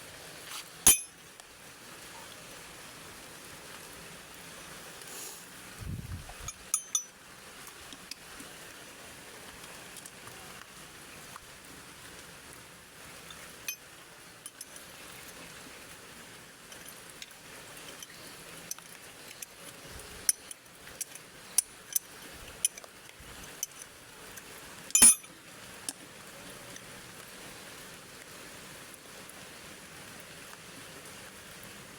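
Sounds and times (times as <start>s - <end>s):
metal tools clinking: 0.9s - 1.2s, 6.4s - 7.1s, 24.9s - 25.3s.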